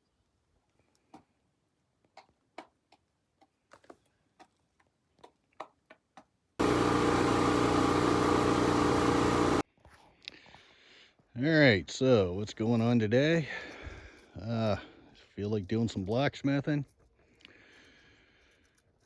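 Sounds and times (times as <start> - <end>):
loud steady machine hum: 6.6 - 9.6.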